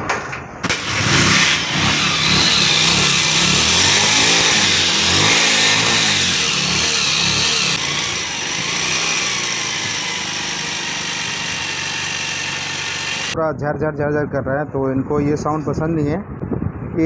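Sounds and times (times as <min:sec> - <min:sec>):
engine rattling: 0:00.7 - 0:13.4
motorcycle engine revving and idling: 0:00.7 - 0:13.4.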